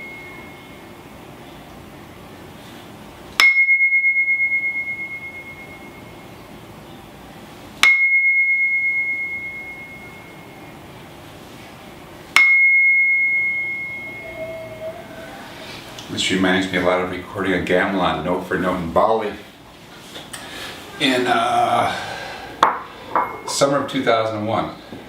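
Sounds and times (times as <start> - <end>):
resonant vessel struck ringing: 3.4 - 6.4, 7.8 - 10.7, 12.3 - 15.0, 22.6 - 23.8.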